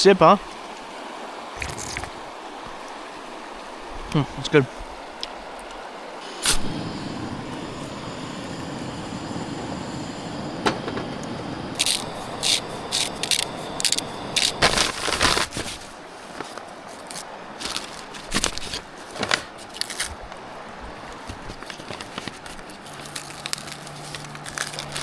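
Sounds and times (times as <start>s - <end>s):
steady hiss: 1.6s - 18.9s
cooking gear clicks and scrapes: 11.8s - 20.2s, 21.1s - 25.0s.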